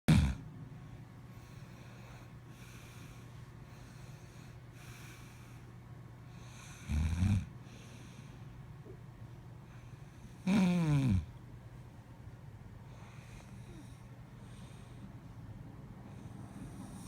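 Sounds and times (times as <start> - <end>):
person snoring: 0.1 - 0.4, 10.4 - 11.3
soft airy breaths: 0.7 - 6.9, 7.5 - 10.5, 12.7 - 17.0.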